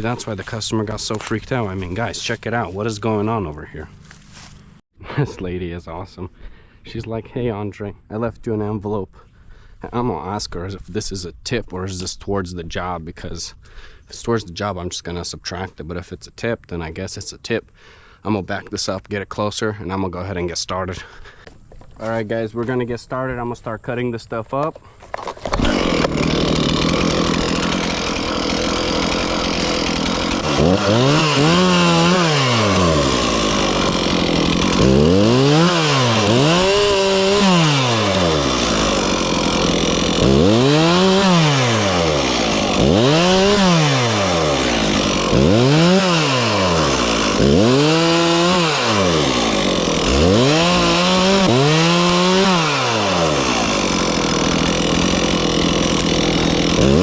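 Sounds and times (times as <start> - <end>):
chainsaw cutting wood: 0.0 - 4.8, 24.7 - 57.0.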